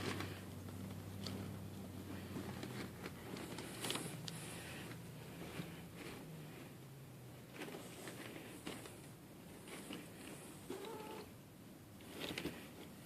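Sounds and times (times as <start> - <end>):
cat scratching and rustling: 0.0 - 11.3
cat meowing: 10.7 - 11.3.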